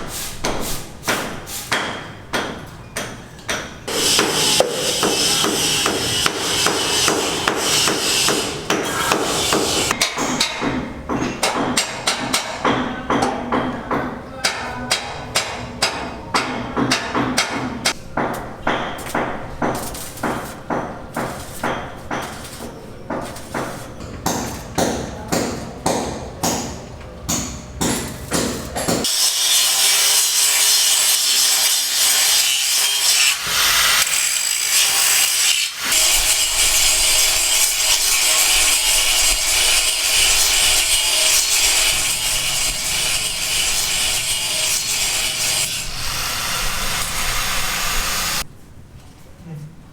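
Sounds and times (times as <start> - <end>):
hissing power tool: 3.9 - 10.0, 29.0 - 48.4
sharp strokes on wood: 3.9 - 10.0.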